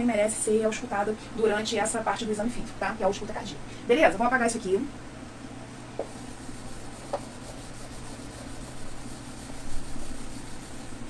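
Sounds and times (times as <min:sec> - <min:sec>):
light taps on whiteboard: 0:06.0 - 0:06.2, 0:07.1 - 0:07.3
eraser rubbing on whiteboard: 0:06.0 - 0:11.0.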